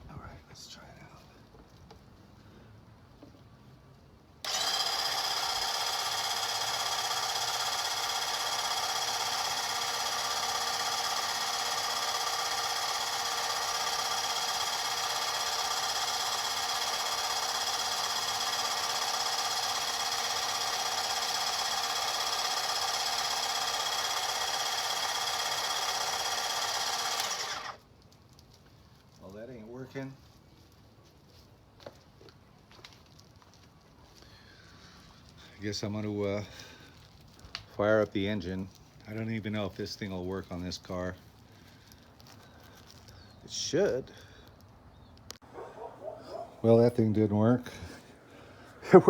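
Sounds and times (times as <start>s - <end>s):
electric pump running: 4.4s - 27.8s.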